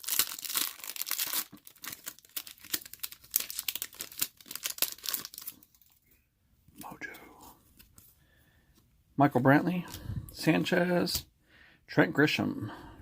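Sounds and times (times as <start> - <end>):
foil wrapper tearing and crinkling: 0.0 - 6.0.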